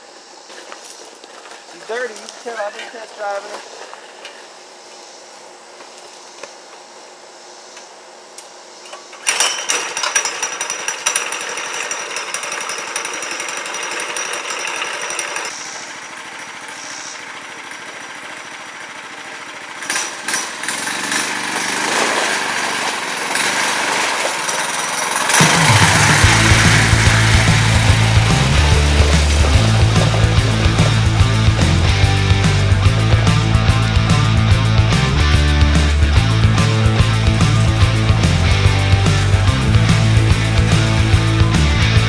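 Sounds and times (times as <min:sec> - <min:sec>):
go kart engine revving: 0:09.3 - 0:42.0.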